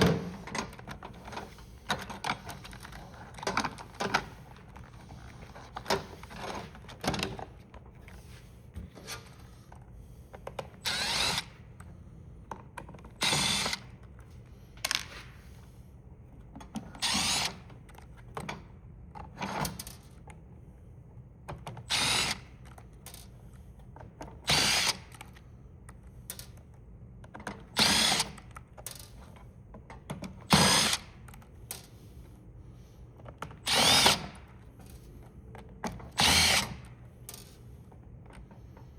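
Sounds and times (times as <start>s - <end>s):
power drill running in short bursts: 33.7s - 34.4s, 36.2s - 36.8s.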